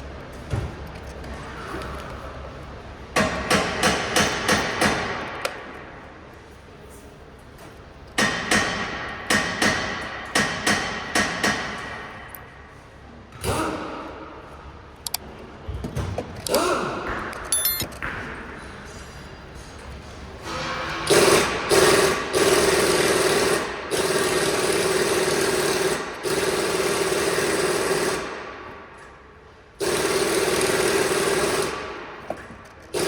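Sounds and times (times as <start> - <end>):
tools knocking and clattering: 17.2 - 18.3
hammer striking metal: 17.4 - 18.0.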